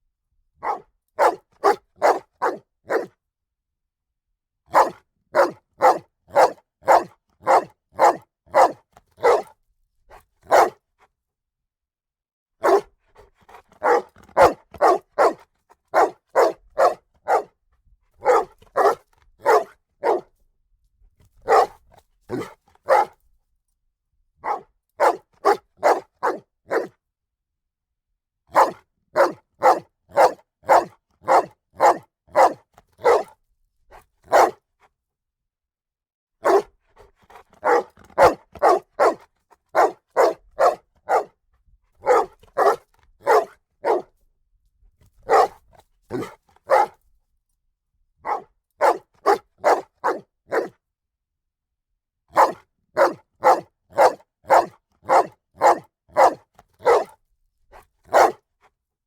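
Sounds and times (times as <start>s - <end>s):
dog barking: 0.6s - 3.2s, 4.7s - 10.8s, 12.6s - 17.6s, 18.2s - 20.3s, 21.4s - 23.2s, 24.4s - 27.0s, 28.5s - 34.6s, 36.4s - 36.7s, 37.3s - 41.4s, 42.0s - 44.2s, 45.2s - 47.0s, 48.2s - 50.8s, 52.3s - 57.2s, 58.1s - 58.5s.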